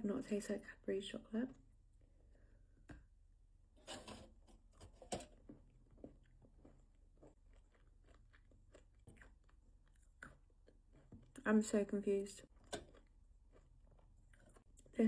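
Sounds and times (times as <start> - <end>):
chewing chocolate crunches: 7.1 - 11.6, 12.4 - 15.0.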